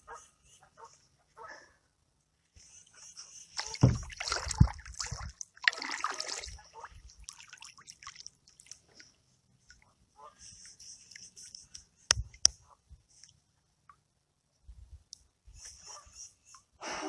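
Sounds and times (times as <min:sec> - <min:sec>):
water splashing and sloshing: 0:03.5 - 0:10.0.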